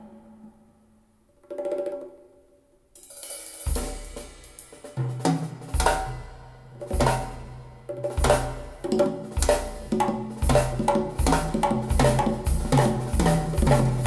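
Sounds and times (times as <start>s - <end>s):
song with drums and bass over loudspeakers: 9.4s - 14.0s.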